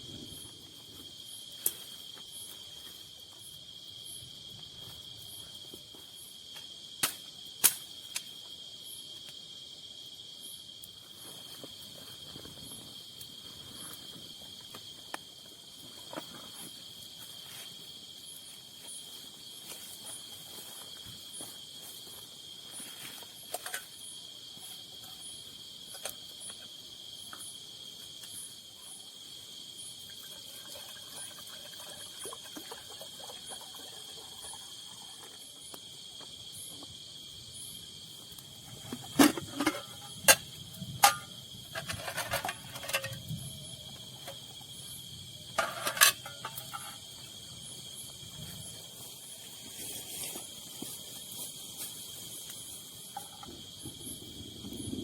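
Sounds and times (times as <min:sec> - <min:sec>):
faint pulsing insect chirp: 0:00.0 - 0:55.0
high-pitched insect drone: 0:16.4 - 0:55.0.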